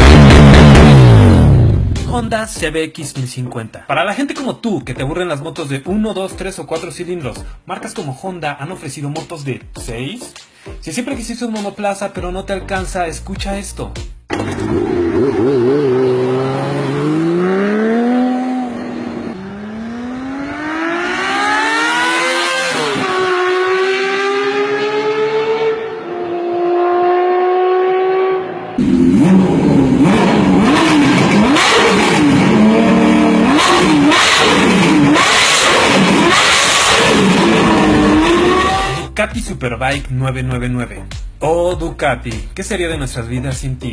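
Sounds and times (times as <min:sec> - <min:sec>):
motorcycle engine accelerating: 0:00.0 - 0:02.1, 0:14.3 - 0:39.1.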